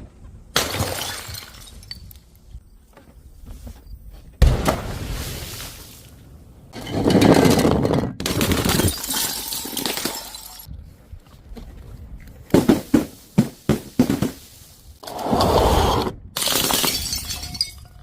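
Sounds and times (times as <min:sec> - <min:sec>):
glass bottles shattering: 0:00.6 - 0:02.2, 0:08.3 - 0:10.7, 0:16.4 - 0:18.0.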